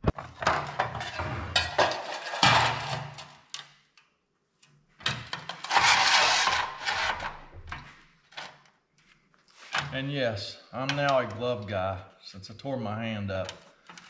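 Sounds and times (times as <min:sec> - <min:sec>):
metal scraping on steel table: 0:00.3 - 0:03.4, 0:05.5 - 0:07.5
sheet metal knocking and clanking: 0:00.4 - 0:03.2.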